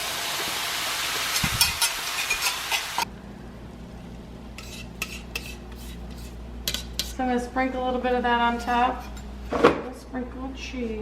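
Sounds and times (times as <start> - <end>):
food sizzling in a pan: 0.0 - 3.1.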